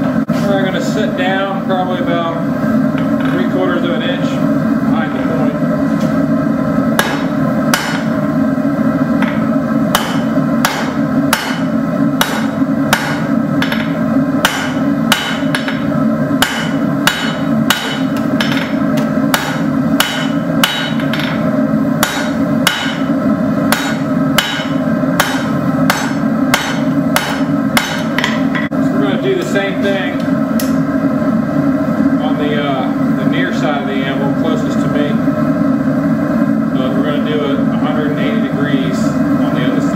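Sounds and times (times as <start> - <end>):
hammer striking steel on anvil: 7.0 - 8.2, 9.2 - 21.4, 22.0 - 23.1, 23.7 - 28.7.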